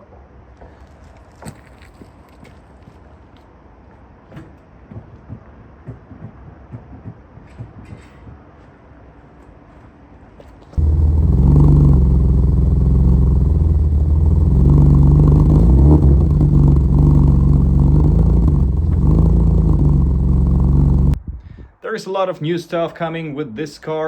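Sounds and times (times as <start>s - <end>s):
car engine idling: 10.8s - 21.2s.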